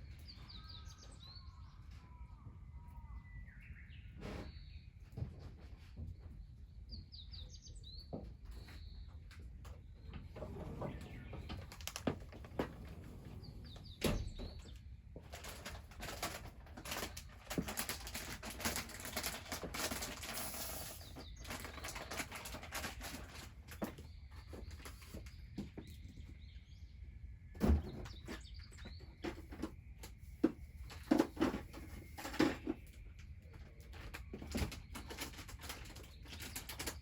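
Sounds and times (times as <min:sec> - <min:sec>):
bird chirping: 0:00.0 - 0:05.2, 0:06.2 - 0:15.6.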